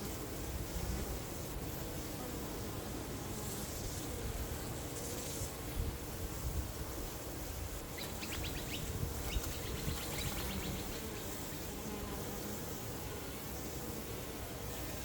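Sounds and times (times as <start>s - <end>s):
honeybees buzzing: 6.8s - 15.0s.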